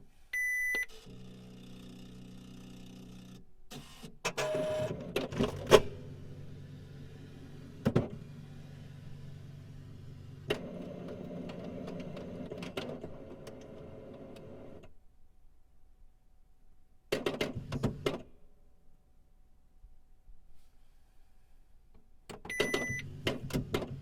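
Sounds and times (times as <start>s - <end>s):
printer whirring: 1.0s - 14.8s.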